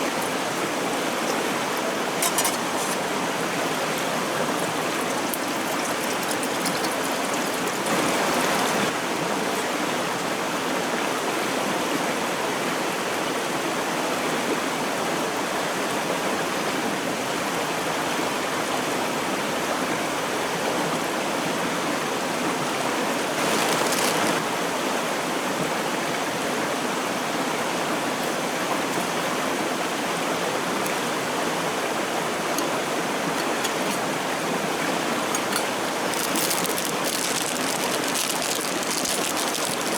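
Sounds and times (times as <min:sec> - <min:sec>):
stream flowing over stones: 0:00.0 - 0:09.0, 0:22.4 - 0:24.6, 0:27.2 - 0:39.9.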